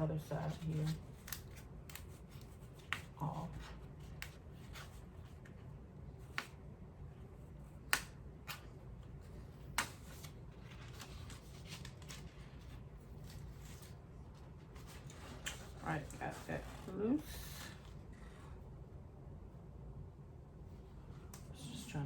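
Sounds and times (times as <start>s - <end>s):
faint low hum: 0.0s - 22.0s
paper rustling: 8.6s - 18.6s.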